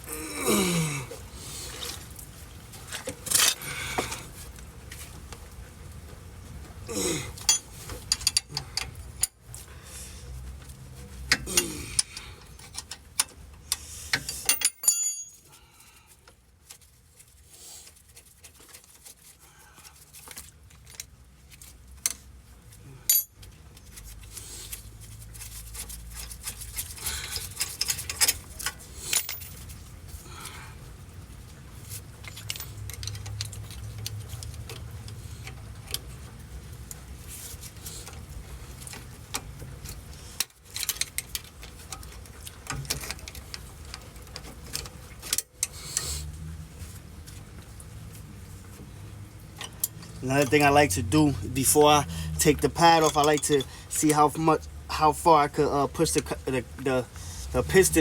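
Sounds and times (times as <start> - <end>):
low steady rumble: 46.1 - 58.0.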